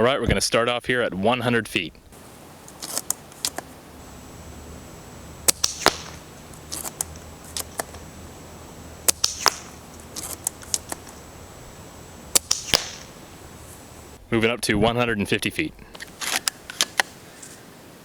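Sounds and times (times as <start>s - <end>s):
airsoft rifle snapping shots: 2.2s - 14.2s
rifle clicks: 2.6s - 14.2s.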